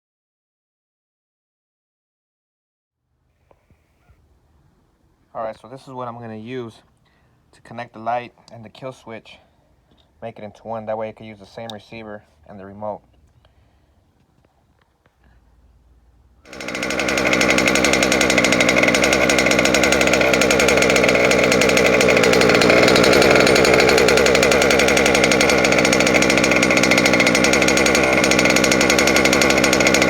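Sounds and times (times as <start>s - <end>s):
small two-stroke engine running: 16.5s - 30.0s.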